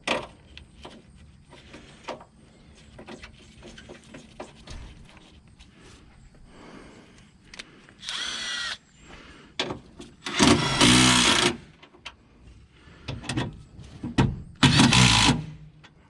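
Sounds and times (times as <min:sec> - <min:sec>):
power drill whining: 0:08.0 - 0:08.8, 0:10.2 - 0:11.6, 0:14.6 - 0:15.5.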